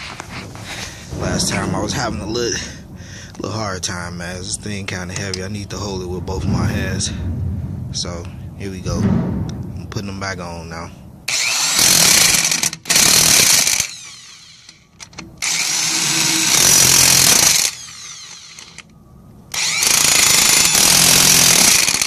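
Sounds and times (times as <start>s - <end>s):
electric impact wrench hammering: 11.3s - 18.9s, 19.5s - 22.0s.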